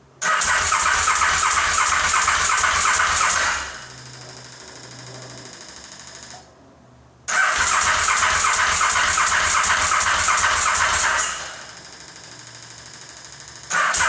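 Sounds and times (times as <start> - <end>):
engine cranking on electric starter: 0.2 - 4.4, 7.3 - 14.0.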